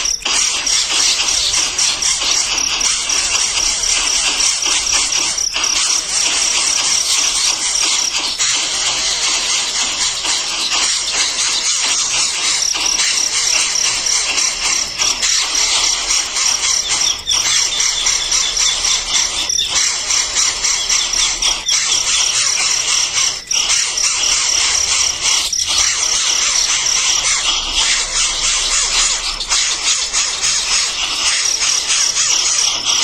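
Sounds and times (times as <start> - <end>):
baby birds chirping: 0.0 - 33.0.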